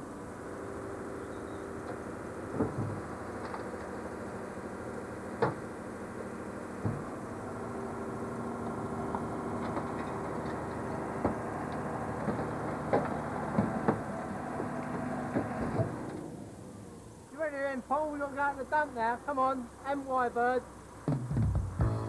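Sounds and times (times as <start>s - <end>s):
truck engine: 0.0s - 17.3s.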